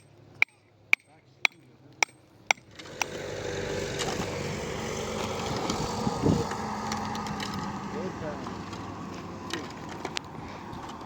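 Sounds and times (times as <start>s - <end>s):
hammer striking a stake: 0.0s - 3.3s
motor engine running: 2.5s - 9.8s.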